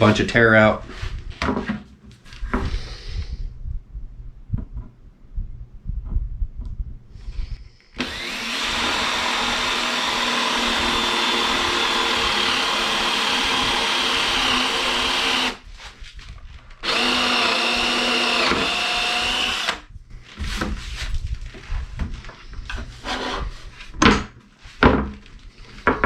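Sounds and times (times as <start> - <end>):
electric drill boring into wood: 8.0 - 15.6, 16.8 - 19.9.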